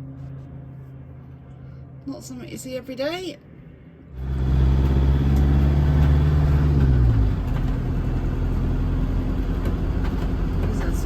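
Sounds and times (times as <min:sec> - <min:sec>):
road noise: 0:00.0 - 0:11.0
vehicle engine under load: 0:04.2 - 0:11.0.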